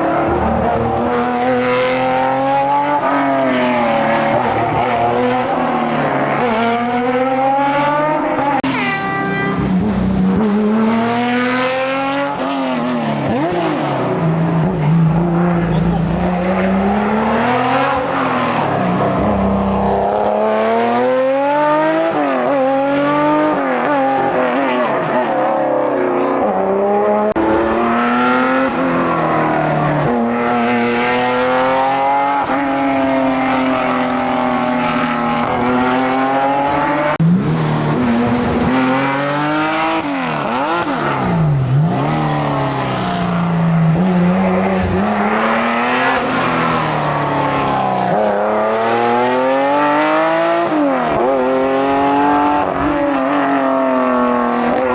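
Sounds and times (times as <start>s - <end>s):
rally car engine revving hard: 0.0s - 8.8s, 9.5s - 54.9s.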